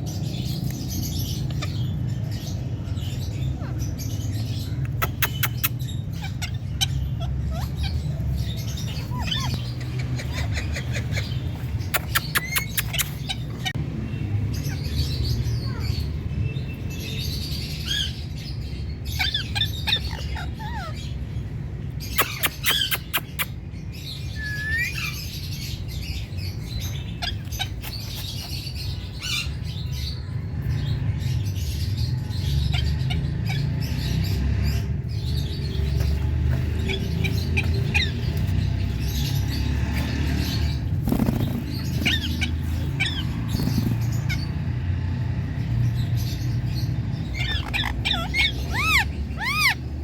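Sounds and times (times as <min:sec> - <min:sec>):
parrot chirping and squawking: 0:00.1 - 0:13.8, 0:17.5 - 0:50.0
sharp clicks: 0:11.9 - 0:13.3.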